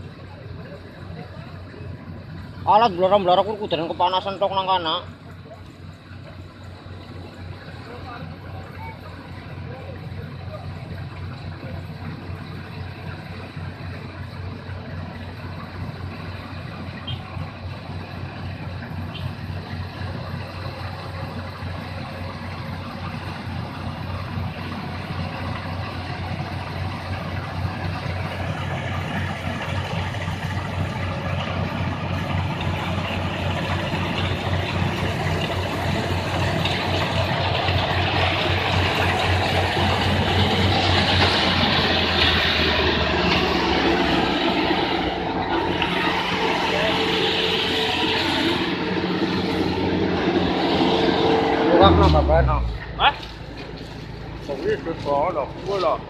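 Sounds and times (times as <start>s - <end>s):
combine harvester diesel engine: 0.0s - 56.0s.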